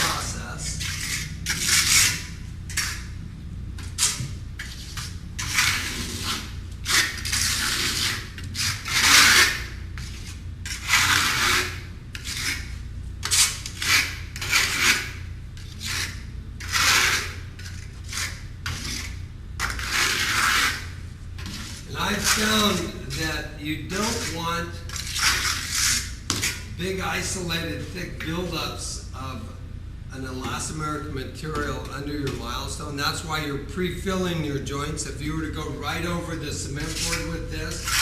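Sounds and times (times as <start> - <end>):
trowel scraping strokes: 0.0 - 3.1, 3.8 - 28.4, 36.6 - 38.0
steady low hum: 0.0 - 38.0.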